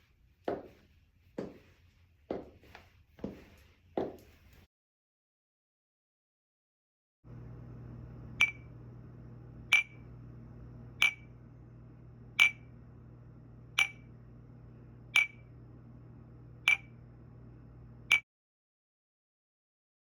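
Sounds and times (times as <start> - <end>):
low hum: 7.3 - 18.2.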